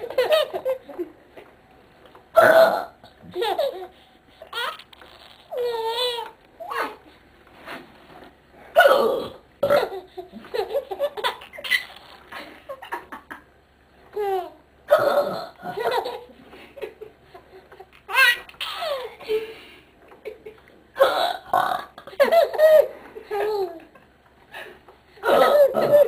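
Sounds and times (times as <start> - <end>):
baby burping: 2.4 - 3.0, 8.8 - 10.0, 14.9 - 15.6, 25.2 - 26.0
baby laughing: 3.2 - 7.0, 9.8 - 12.9, 17.3 - 19.3.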